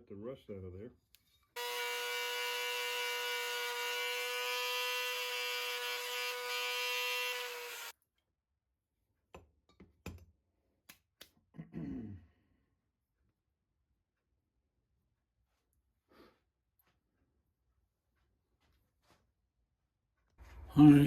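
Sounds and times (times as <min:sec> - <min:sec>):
wire brush power tool whining: 0:01.6 - 0:07.9.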